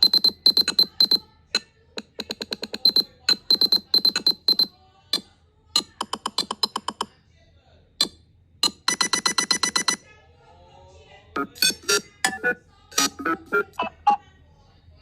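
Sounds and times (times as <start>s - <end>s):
electronic ringtone blips: 8.6s - 10.0s.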